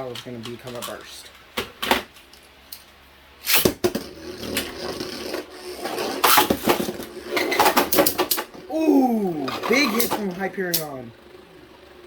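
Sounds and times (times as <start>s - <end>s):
spinning tops clattering in plastic stadium: 0.0s - 1.5s, 9.4s - 11.4s
spinning top launcher rip: 3.4s - 8.5s.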